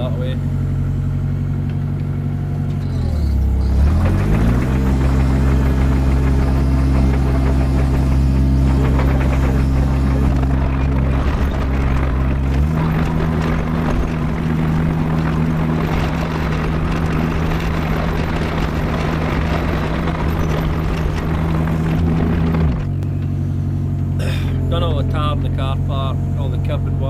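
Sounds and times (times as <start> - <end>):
vehicle engine running: 0.0 - 27.0.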